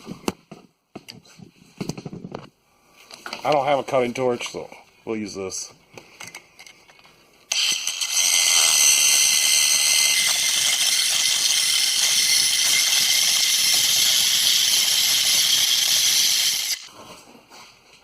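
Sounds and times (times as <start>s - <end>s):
angle grinder cutting steel: 7.5s - 16.9s.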